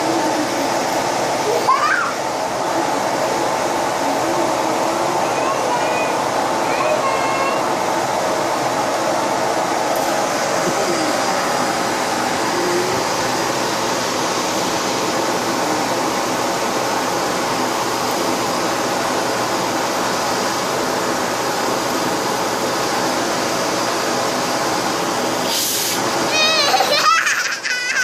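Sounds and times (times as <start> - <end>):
vacuum cleaner running: 0.0 - 28.0
rush of air: 25.4 - 26.2.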